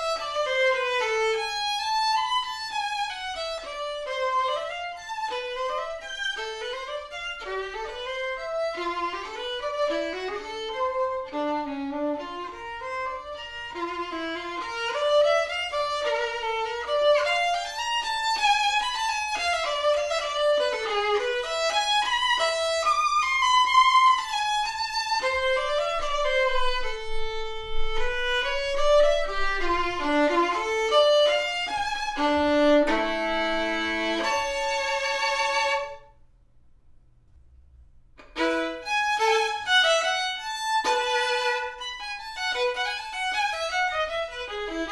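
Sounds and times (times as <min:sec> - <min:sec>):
violin melody: 0:00.0 - 0:36.2, 0:38.2 - 0:44.9.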